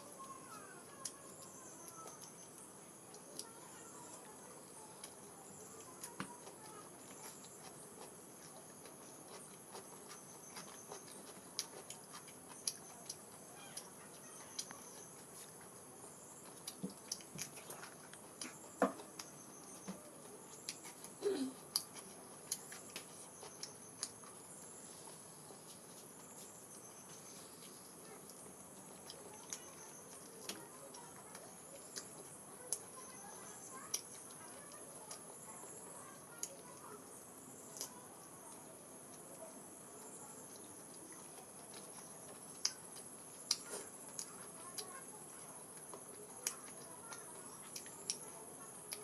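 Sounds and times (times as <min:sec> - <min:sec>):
person chewing and smacking: 0:05.8 - 0:24.8, 0:40.4 - 0:45.0, 0:45.7 - 0:48.3.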